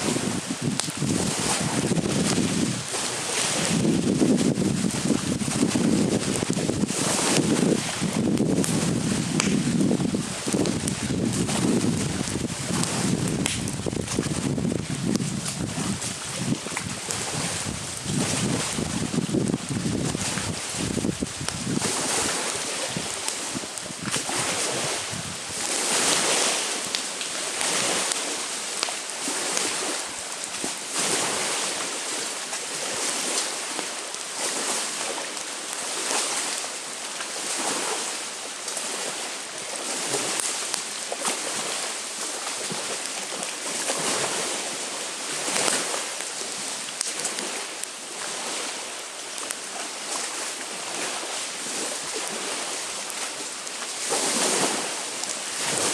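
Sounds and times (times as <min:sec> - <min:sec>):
wind blowing: 0:00.0 - 0:35.1
small waves washing onto shore: 0:00.0 - 0:55.9.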